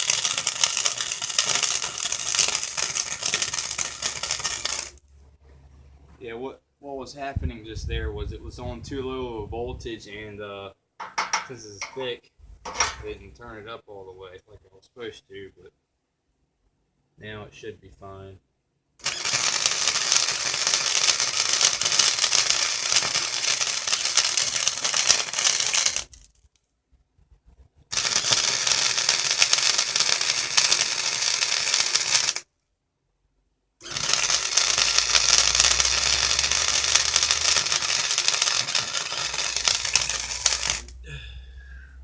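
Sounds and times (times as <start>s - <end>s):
welding arc crackling sizzle: 0.0s - 5.0s, 19.0s - 26.4s, 27.9s - 32.5s, 33.8s - 41.0s.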